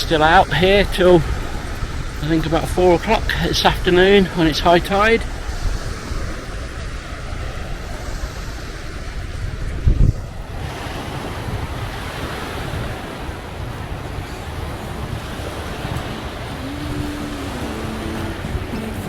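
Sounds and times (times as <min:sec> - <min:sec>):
waves breaking on a beach: 0:00.0 - 0:19.0
wind on the microphone: 0:00.0 - 0:19.0
held musical notes: 0:14.1 - 0:19.0.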